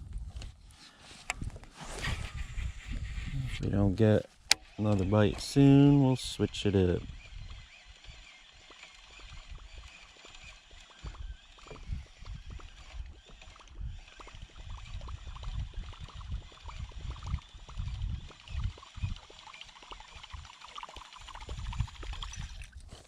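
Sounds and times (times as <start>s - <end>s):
small ticks: 7.2s - 22.8s.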